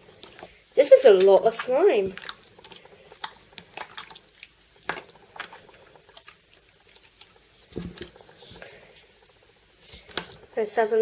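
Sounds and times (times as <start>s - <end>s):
slime squeezed with wet pops: 1.1s - 8.3s.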